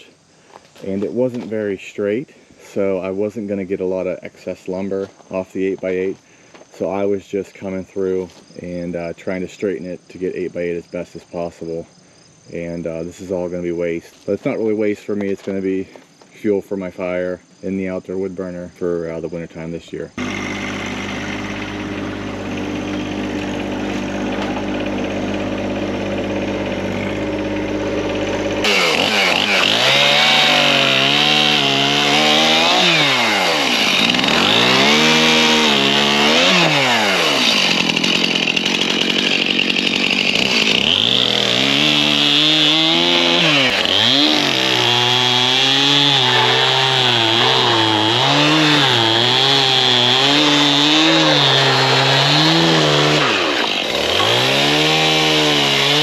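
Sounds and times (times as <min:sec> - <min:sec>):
engine idling: 0:20.2 - 0:30.4
chainsaw cutting wood: 0:20.2 - 0:56.0.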